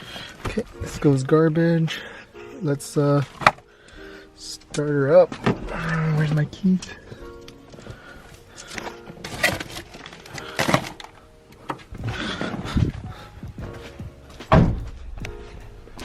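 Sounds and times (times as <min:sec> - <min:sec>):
background music: 0:00.0 - 0:16.0
knocks and thumps: 0:11.9 - 0:15.4.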